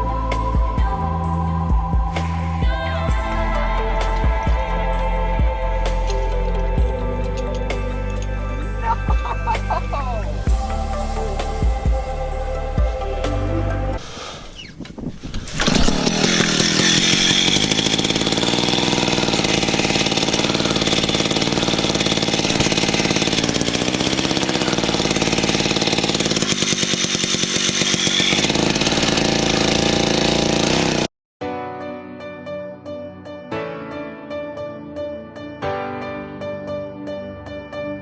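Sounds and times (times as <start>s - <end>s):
gas ice auger drilling: 2.2s - 10.6s, 13.9s - 31.1s.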